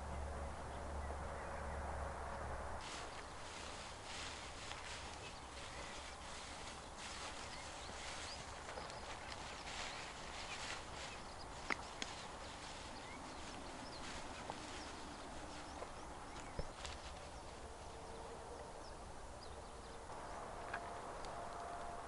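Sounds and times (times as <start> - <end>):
outdoor background hiss: 0.0 - 22.0
sharp clicks and taps: 11.6 - 12.2.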